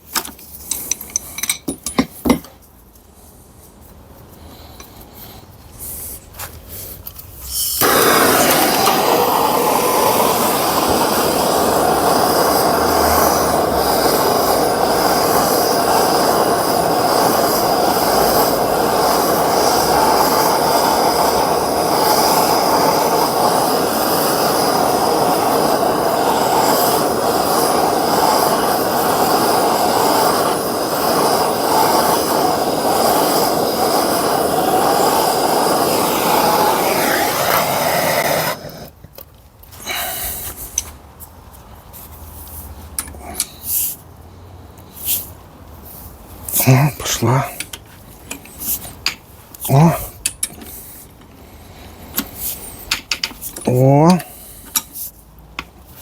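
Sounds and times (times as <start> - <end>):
gas torch flame hissing: 4.4 - 39.0, 39.8 - 41.0, 42.4 - 44.0, 44.8 - 56.0.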